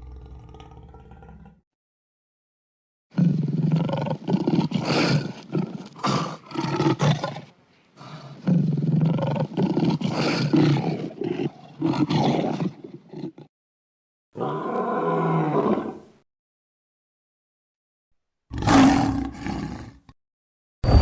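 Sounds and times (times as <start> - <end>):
monster roar: 0.0 - 1.6, 18.5 - 20.1.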